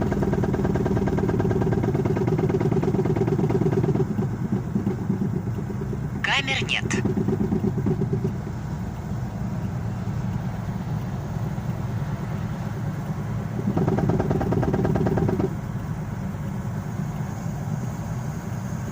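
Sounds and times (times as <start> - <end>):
fast wheel knocking: 0.0 - 6.2, 7.0 - 9.2, 13.0 - 15.6
car road and engine rumble: 0.0 - 18.9.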